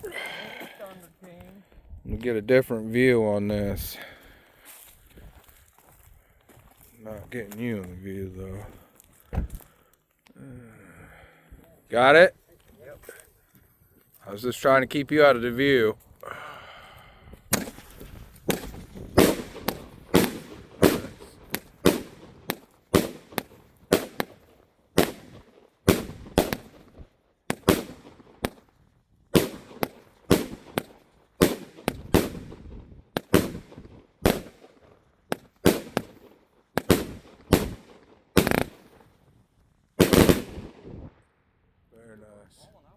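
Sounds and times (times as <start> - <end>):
fireworks bangs: 17.5 - 39.1, 40.0 - 41.2.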